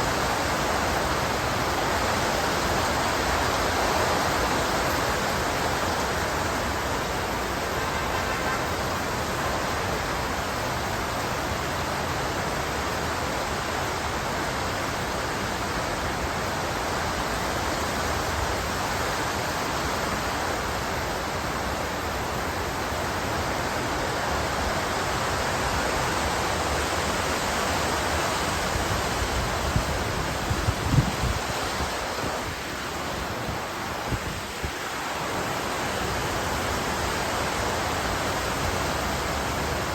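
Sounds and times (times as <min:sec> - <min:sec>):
heavy rain pouring: 0:00.0 - 0:39.9.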